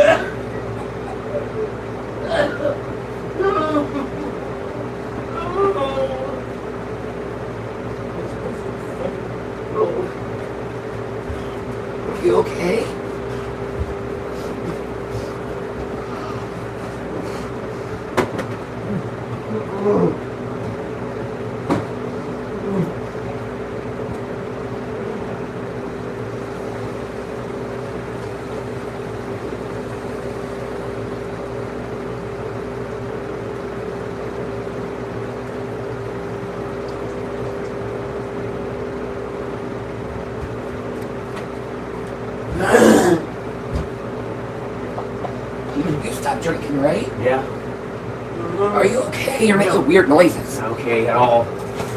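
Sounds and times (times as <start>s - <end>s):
man gagging and retching: 0.0s - 1.6s, 42.5s - 43.4s
steady mechanical hum: 0.0s - 51.9s.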